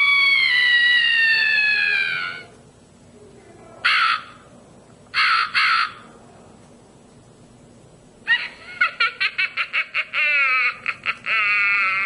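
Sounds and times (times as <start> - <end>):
crow caws: 3.8 - 4.4, 5.2 - 6.1.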